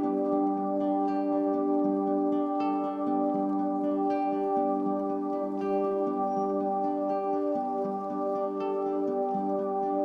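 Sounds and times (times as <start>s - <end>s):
soft ambient music: 0.0s - 10.0s.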